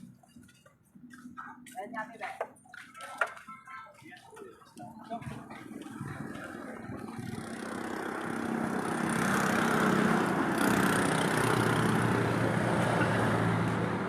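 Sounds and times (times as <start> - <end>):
engine running: 5.2 - 14.0.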